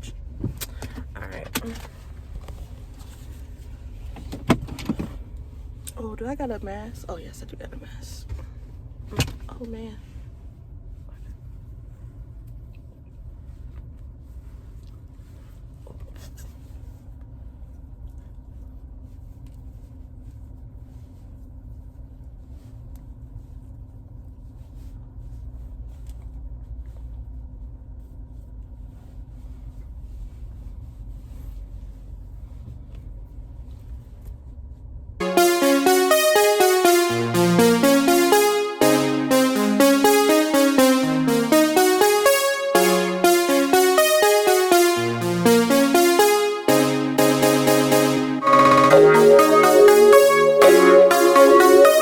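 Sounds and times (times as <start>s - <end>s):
loud electronic music: 35.2s - 52.0s.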